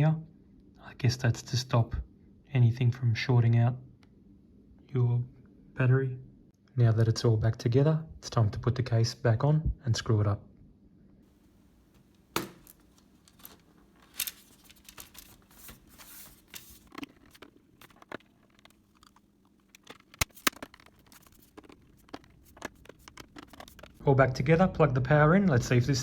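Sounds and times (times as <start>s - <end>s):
small screws being handled: 12.4s - 24.0s.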